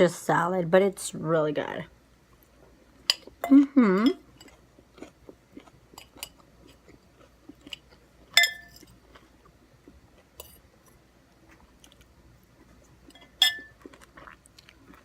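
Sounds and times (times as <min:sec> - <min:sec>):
chewing and crunching: 0:04.1 - 0:15.0
cutlery clinking on a dish: 0:08.4 - 0:08.9, 0:13.1 - 0:13.7.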